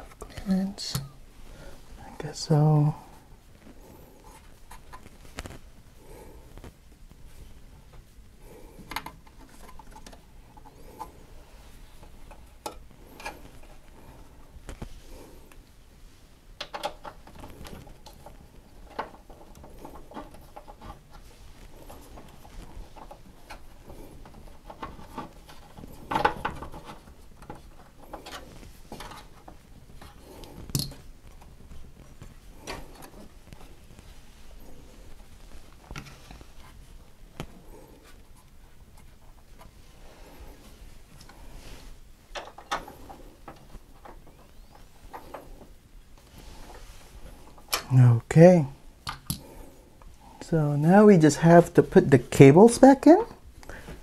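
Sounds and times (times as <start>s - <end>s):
small clicks taps and rubbing: 3.6s - 5.7s, 8.8s - 11.2s.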